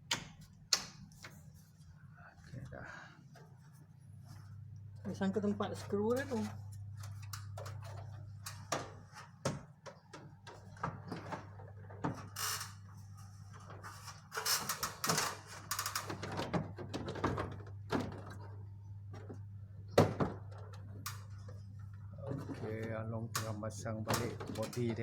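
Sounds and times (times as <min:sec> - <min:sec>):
steady low hum: 0:00.0 - 0:14.4.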